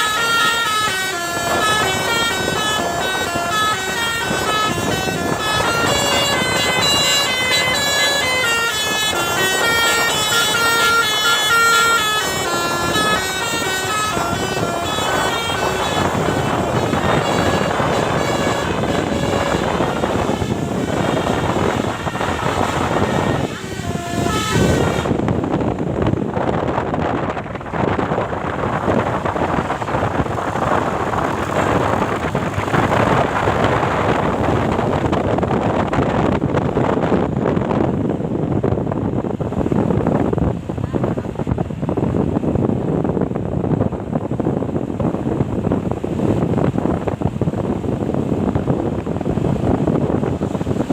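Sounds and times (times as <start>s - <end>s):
multi-tone bus horn melody: 0.0s - 37.8s
road traffic passing: 0.0s - 50.9s
vehicle noise: 0.0s - 50.9s.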